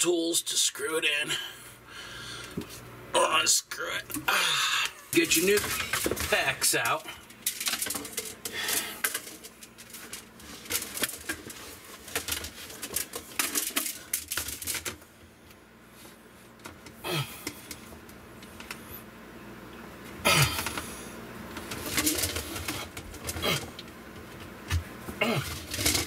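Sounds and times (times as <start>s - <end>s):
plastic tubing rattling: 5.2s - 15.0s, 21.6s - 23.9s.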